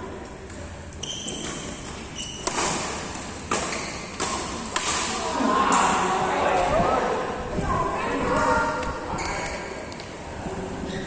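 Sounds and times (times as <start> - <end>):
shoe squeaks: 1.0 - 3.0, 3.6 - 4.2, 9.1 - 9.9
rackets striking shuttlecock: 1.3 - 6.0.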